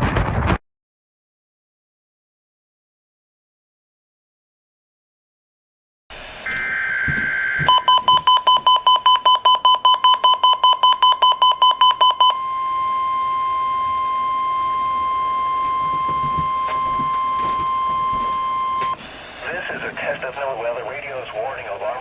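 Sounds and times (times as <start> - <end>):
steady alarm tone: 6.2 - 19.4
rapid beeping: 6.5 - 21.3.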